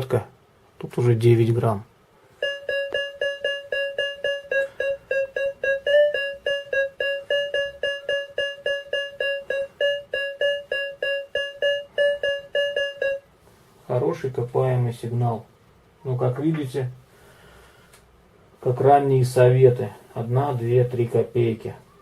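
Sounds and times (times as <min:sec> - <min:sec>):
metal detector beeping: 0:02.4 - 0:13.3.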